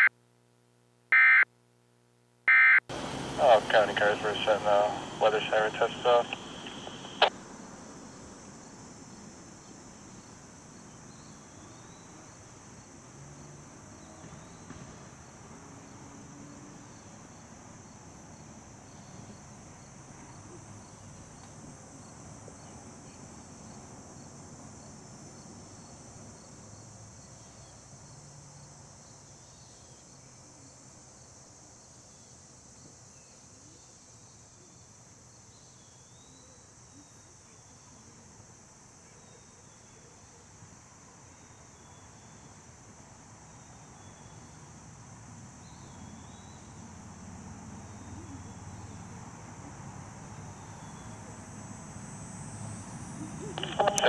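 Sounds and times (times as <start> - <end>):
faint repeating chirp: 1.2 - 1.4
high-pitched insect chorus: 2.9 - 53.5.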